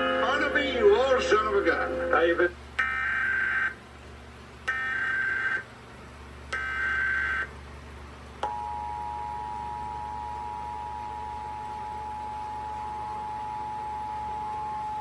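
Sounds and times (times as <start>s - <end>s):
steady two-tone attention signal: 0.0s - 2.4s, 8.4s - 15.0s.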